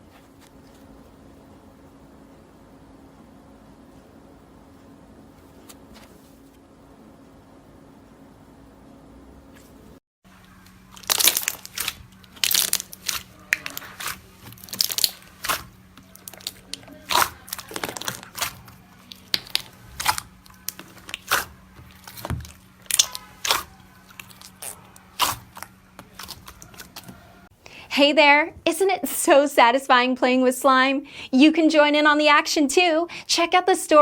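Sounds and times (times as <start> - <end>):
faint hum: 0.0 - 34.0
slime crackling and popping: 10.6 - 27.2.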